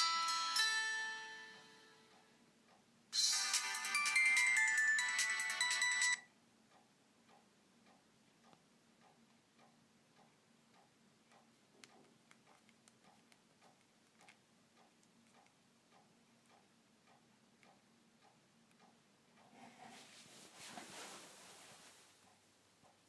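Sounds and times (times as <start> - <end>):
phone ringtone melody: 0.0 - 2.1, 3.1 - 6.3
faint steady ticking: 0.0 - 19.8, 22.0 - 23.0.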